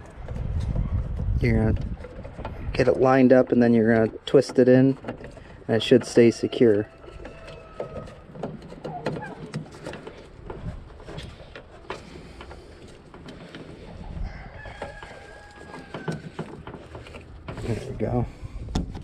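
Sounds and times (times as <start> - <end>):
rooster crowing: 6.4 - 8.3, 14.1 - 16.5.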